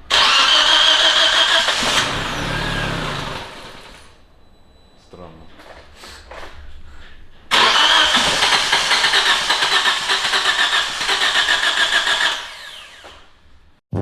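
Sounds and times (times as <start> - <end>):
car engine starting and stalling: 0.0 - 4.2, 7.5 - 13.6.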